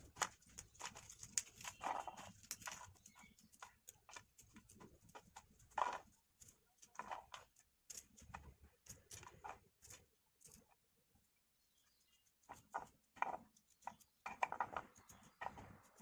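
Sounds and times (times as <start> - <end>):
tapping and clicking of kitchen work: 12.5 - 16.0.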